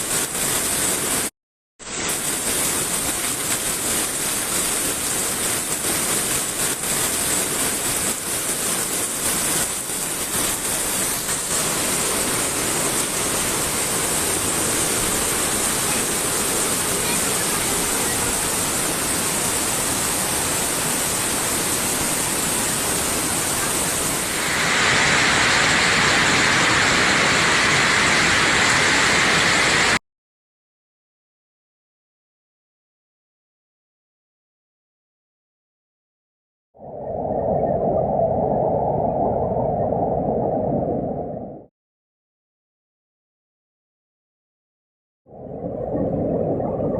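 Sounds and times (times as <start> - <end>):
floodwater rushing: 0.0 - 1.3, 1.9 - 30.0.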